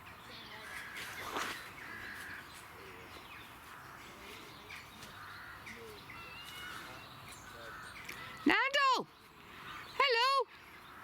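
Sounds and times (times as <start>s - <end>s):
faint bird calls: 0.2s - 11.0s
crow-like caws: 1.8s - 2.4s.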